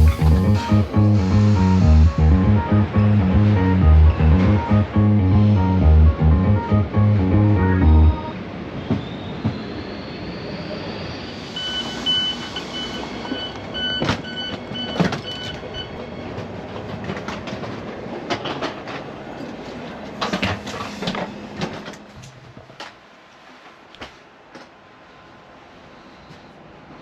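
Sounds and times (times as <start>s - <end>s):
high electronic beeping: 0.0s - 5.2s, 10.3s - 16.1s
train rumble: 0.0s - 27.0s.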